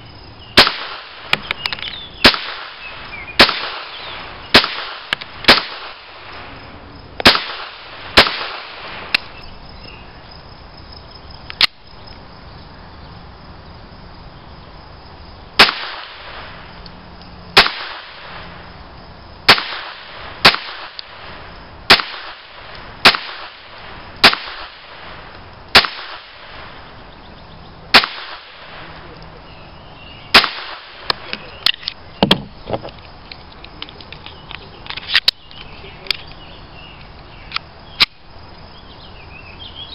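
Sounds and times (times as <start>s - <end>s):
pistol shots: 0.6s - 1.4s, 2.2s - 6.2s, 7.2s - 9.3s, 15.6s - 16.5s, 17.6s - 18.4s, 19.5s - 21.3s, 21.9s - 25.1s, 25.7s - 26.6s, 27.9s - 28.8s, 30.3s - 31.2s.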